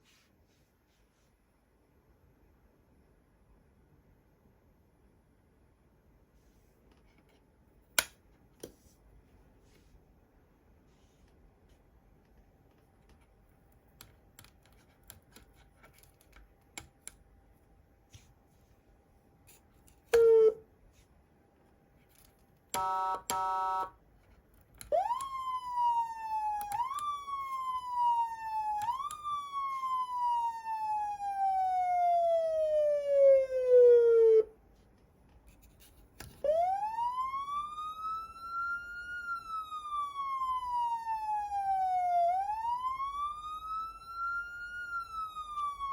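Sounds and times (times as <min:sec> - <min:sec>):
switch clicks: 0:08.0 - 0:08.2.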